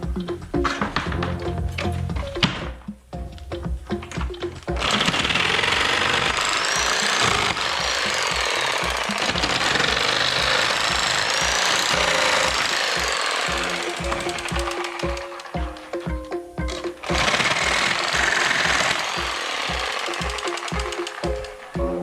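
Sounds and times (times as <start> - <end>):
background music with beat: 0.0 - 22.0
woodworking machine rasping: 4.8 - 15.9, 17.0 - 22.0.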